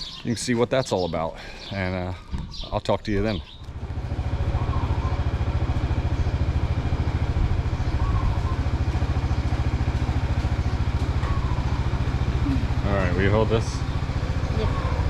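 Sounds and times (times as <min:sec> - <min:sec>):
vehicle engine idling: 0:03.2 - 0:15.0.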